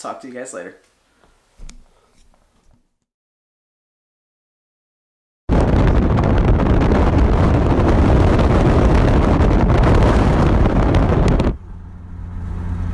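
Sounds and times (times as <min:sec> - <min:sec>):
wind buffeting microphone: 0:05.5 - 0:11.7
low engine hum: 0:05.5 - 0:12.9.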